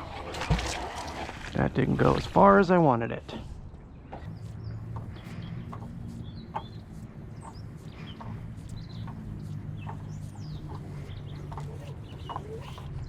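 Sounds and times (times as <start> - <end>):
birds calling and chirping: 3.4 - 13.0.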